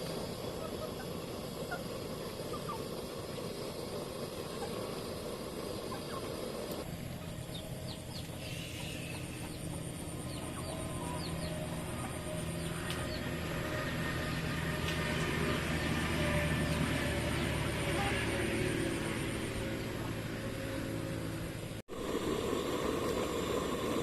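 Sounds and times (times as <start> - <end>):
steady low hum: 0.0 - 24.0
chickens clucking: 0.6 - 3.0, 5.8 - 6.4.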